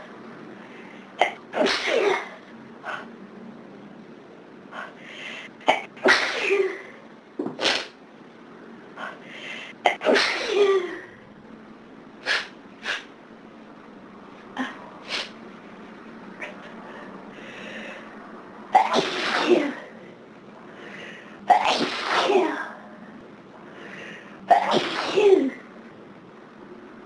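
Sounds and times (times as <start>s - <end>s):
person sneezing: 1.2s - 2.4s, 5.7s - 6.8s, 9.9s - 11.0s, 12.2s - 13.1s, 14.6s - 15.4s, 18.8s - 19.8s, 24.5s - 25.6s.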